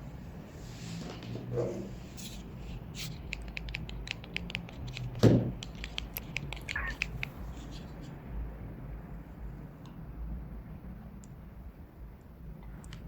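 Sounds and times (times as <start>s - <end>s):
low steady hum: 0.0s - 13.0s
light clicks and taps: 3.0s - 8.1s.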